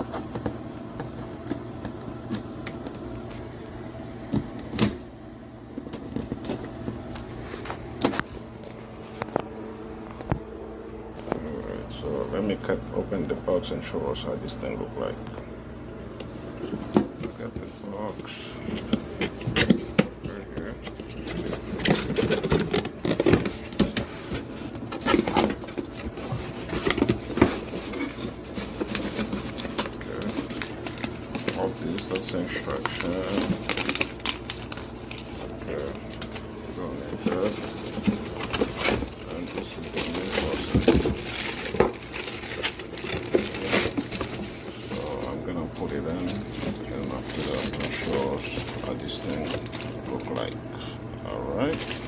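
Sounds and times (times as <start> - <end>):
packaging rustling and scraping: 5.8 - 9.5, 16.3 - 50.6, 51.5 - 52.0.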